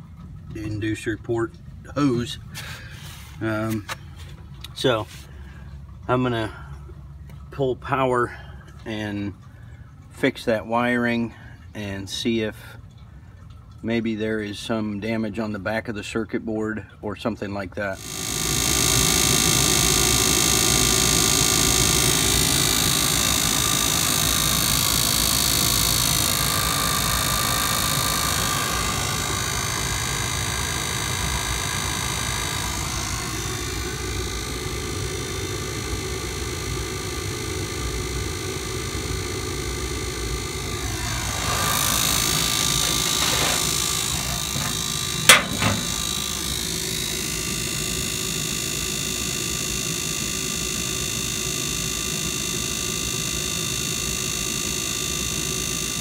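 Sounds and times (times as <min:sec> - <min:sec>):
gas unit humming: 0:00.0 - 0:56.0
sharp click: 0:41.2 - 0:46.4.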